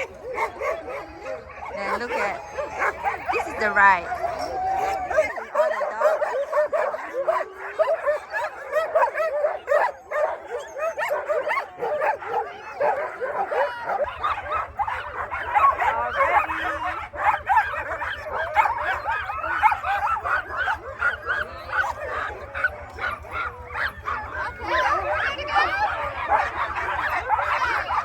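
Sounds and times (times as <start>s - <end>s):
sled dogs barking and whining: 0.0s - 28.0s.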